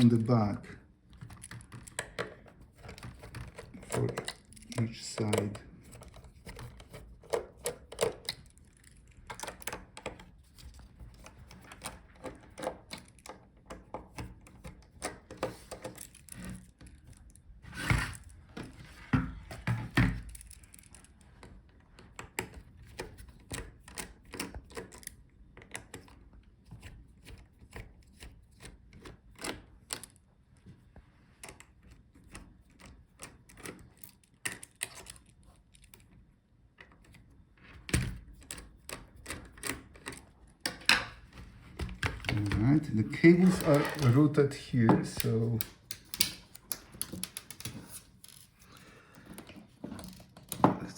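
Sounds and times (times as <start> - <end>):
screwdriver clicks and taps: 45.0 - 48.4.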